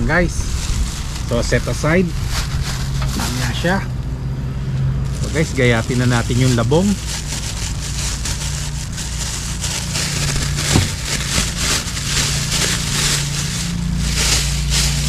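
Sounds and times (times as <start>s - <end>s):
crunching bamboo handling: 0.0s - 4.0s, 5.0s - 15.0s.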